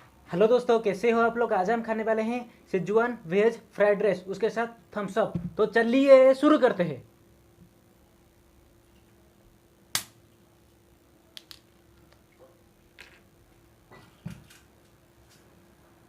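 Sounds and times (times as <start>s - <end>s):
faint steady hum: 0.0s - 16.0s
sharp click: 9.9s - 10.2s.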